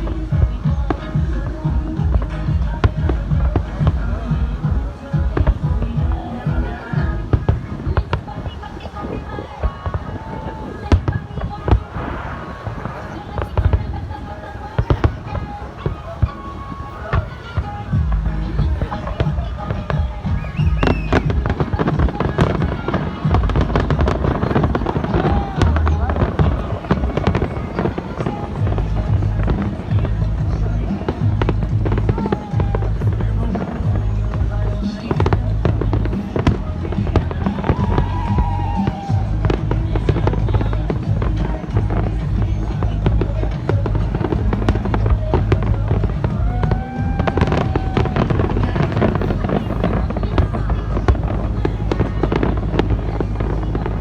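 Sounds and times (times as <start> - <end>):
background music: 0.0 - 54.0
fireworks bangs and crackles: 0.0 - 54.0
whistling firework shells: 20.2 - 23.2
low rumble: 28.6 - 54.0.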